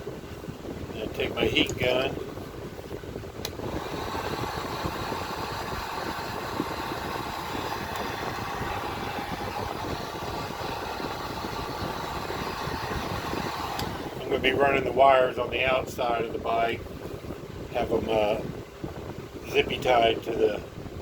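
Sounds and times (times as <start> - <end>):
heat gun fan blowing: 0.0 - 21.0.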